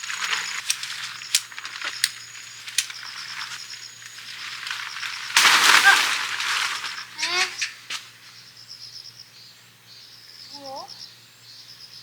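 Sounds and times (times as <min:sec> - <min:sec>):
loud rustling rush: 0:00.0 - 0:08.3
crickets chirping: 0:00.0 - 0:12.0.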